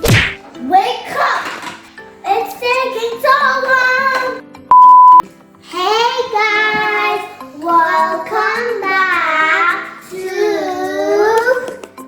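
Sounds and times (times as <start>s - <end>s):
background music: 0.0s - 12.0s
loud steady beep: 4.7s - 5.2s
child singing: 5.7s - 11.8s.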